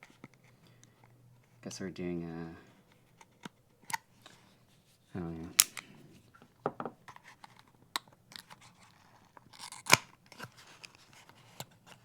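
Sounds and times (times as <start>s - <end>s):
knife cutting box packaging: 8.4s - 12.0s.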